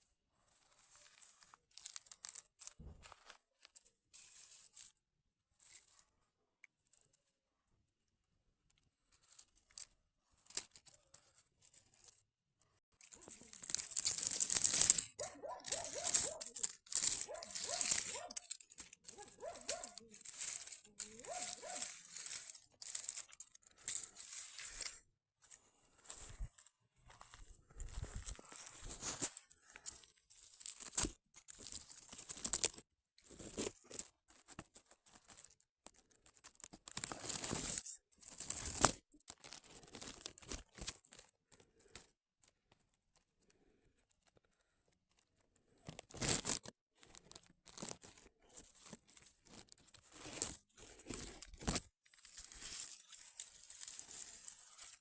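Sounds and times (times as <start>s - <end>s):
dry vegetation rustling and crackling: 13.0s - 25.0s, 46.2s - 55.0s.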